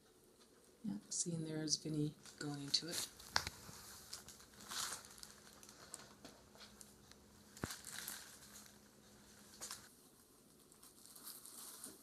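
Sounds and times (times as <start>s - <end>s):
bag crinkling and rustling: 2.2s - 12.0s.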